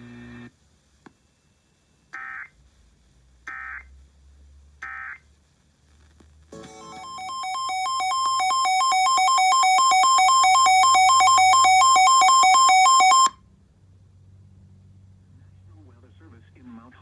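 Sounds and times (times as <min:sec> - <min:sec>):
two-tone electronic alert: 0:06.6 - 0:13.3.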